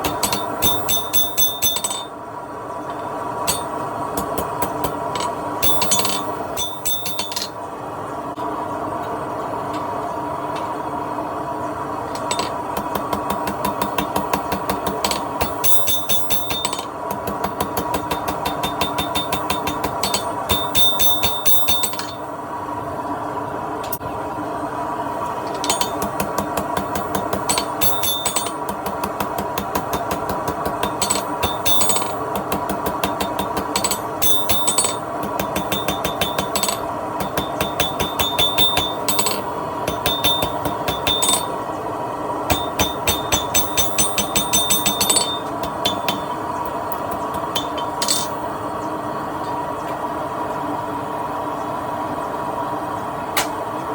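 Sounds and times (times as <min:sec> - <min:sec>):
hammer striking steel on anvil: 0:00.0 - 0:02.2, 0:03.4 - 0:07.6, 0:12.2 - 0:22.3, 0:25.5 - 0:41.7, 0:42.5 - 0:48.5
steady hum: 0:00.0 - 0:53.9.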